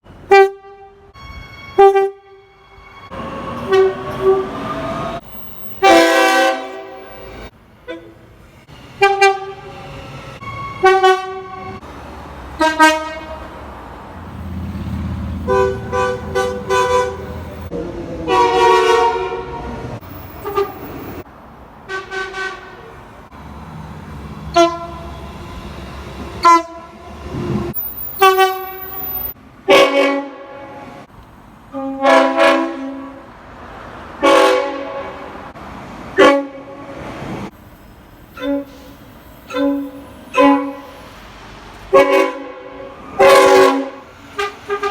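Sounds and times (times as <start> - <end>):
low rumble of passing train: 0.1 - 44.9
train horn blasts: 0.3 - 8.2, 9.0 - 11.8, 12.6 - 13.5, 14.4 - 17.7, 18.3 - 21.2, 21.9 - 22.9, 24.5 - 25.4, 26.4 - 31.1, 31.7 - 33.2, 34.2 - 35.4, 38.4 - 38.9, 39.5 - 41.0, 41.9 - 44.9.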